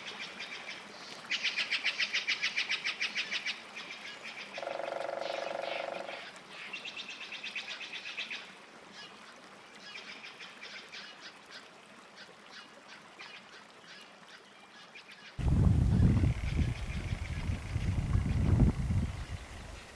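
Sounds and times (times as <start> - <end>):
short animal calls: 4.6 - 6.3.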